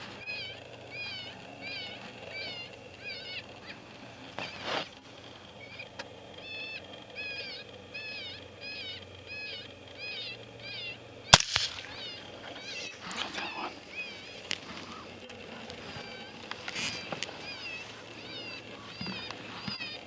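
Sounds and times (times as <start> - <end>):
suppressed rifle shot: 11.3 - 12.3.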